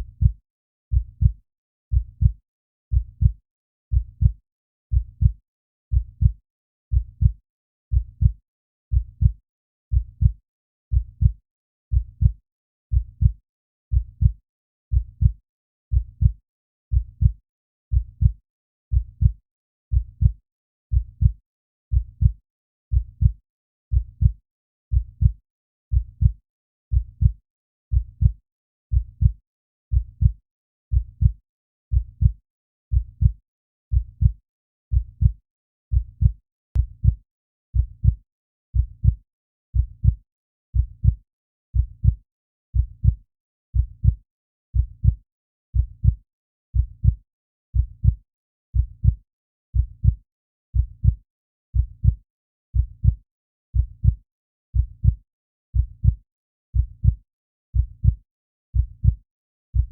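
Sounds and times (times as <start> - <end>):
heartbeat lub-dub: 32.2 - 33.4, 34.0 - 34.4, 35.0 - 35.4, 36.2 - 37.2, 42.8 - 43.2, 58.8 - 59.2.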